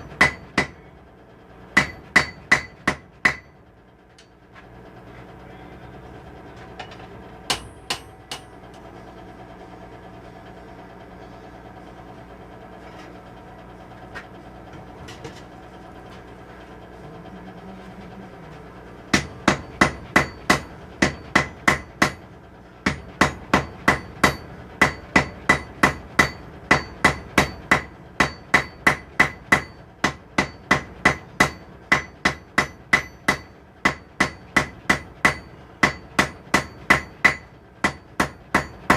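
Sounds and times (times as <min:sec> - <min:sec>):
hammer striking steel on anvil: 0:00.0 - 0:00.8, 0:01.8 - 0:03.6, 0:07.5 - 0:08.6, 0:19.1 - 0:22.2, 0:22.8 - 0:38.9
steady low hum: 0:00.0 - 0:38.9.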